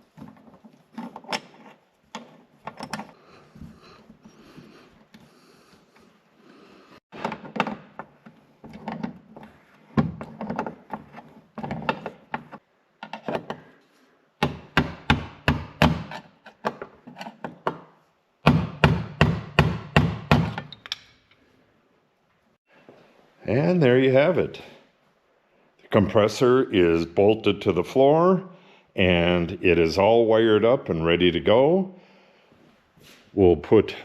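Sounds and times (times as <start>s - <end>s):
hard knocks: 18.4s - 20.6s.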